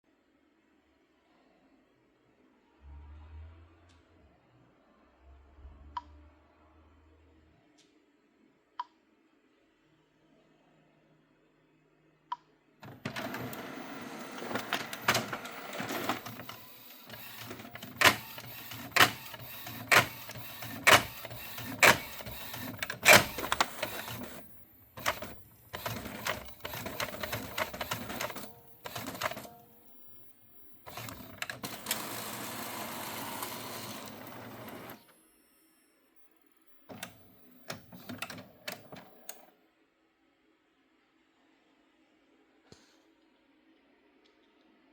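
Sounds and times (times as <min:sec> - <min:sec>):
inkjet printer running: 0:12.8 - 0:35.2, 0:36.9 - 0:39.3.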